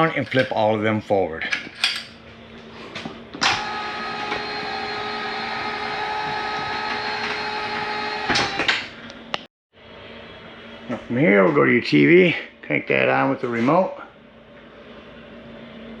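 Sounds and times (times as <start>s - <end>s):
electric motor humming: 3.4s - 8.8s
motor start and stop clicks: 3.4s - 9.4s.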